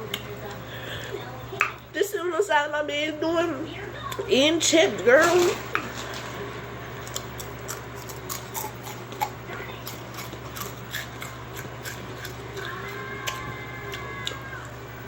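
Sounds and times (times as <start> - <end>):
faint steady hum: 0.0 - 15.0
potato chips crunching: 5.1 - 6.4, 7.0 - 14.8.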